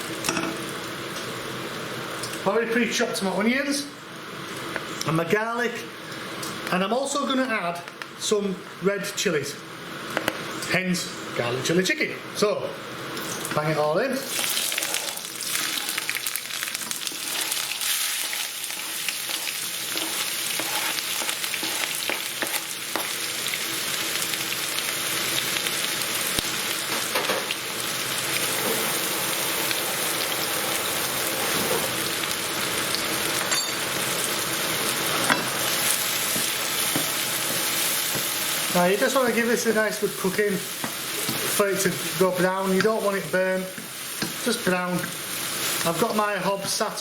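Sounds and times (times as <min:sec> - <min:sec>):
vegetables sizzling in oil: 0:00.0 - 0:02.5, 0:12.8 - 0:47.0
spoon scraping and knocking pan: 0:17.1 - 0:23.2, 0:35.1 - 0:38.4.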